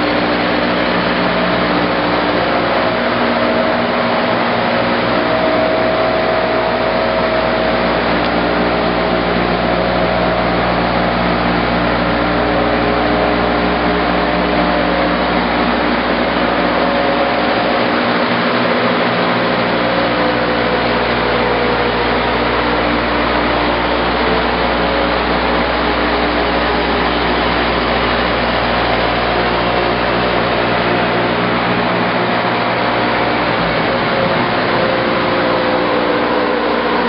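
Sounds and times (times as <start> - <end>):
sanding machine droning: 0.0 - 37.0.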